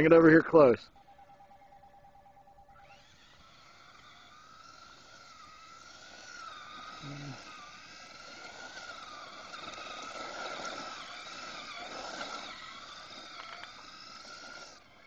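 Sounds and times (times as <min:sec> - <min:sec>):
toy car electric motor whining: 0:02.6 - 0:15.0.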